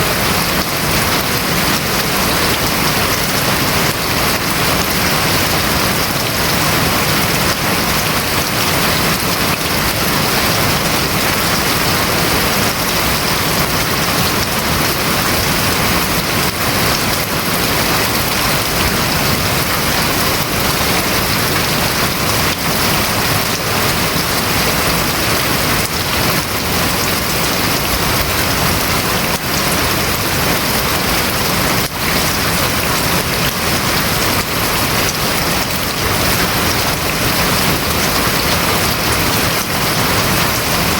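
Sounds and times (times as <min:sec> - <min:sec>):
rain falling on a roof: 0:00.0 - 0:40.9.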